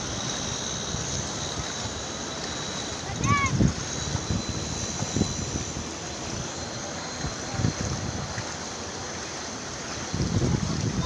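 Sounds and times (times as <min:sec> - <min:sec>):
floodwater rushing: 0:00.0 - 0:11.0
wind buffeting microphone: 0:03.0 - 0:06.6, 0:07.2 - 0:08.6, 0:09.9 - 0:11.0.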